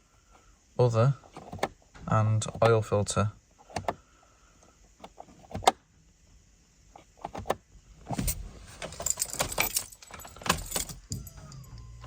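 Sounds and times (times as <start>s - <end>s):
keys jangling and clicking: 8.2s - 12.0s.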